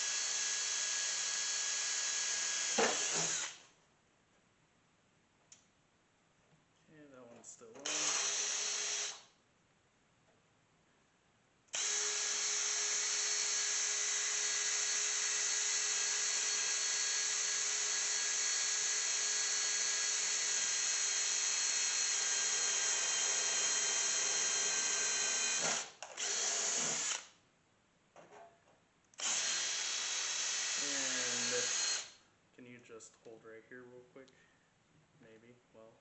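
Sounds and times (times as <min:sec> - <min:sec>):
electric drill whining: 0:00.0 - 0:03.7, 0:07.8 - 0:09.3, 0:11.7 - 0:27.3, 0:29.2 - 0:32.2.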